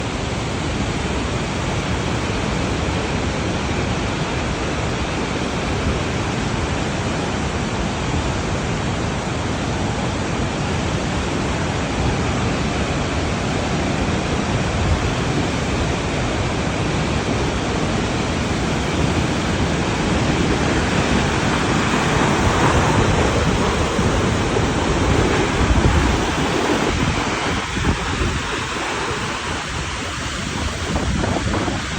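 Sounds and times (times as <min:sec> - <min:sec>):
waterfall rushing: 0:00.0 - 0:31.9.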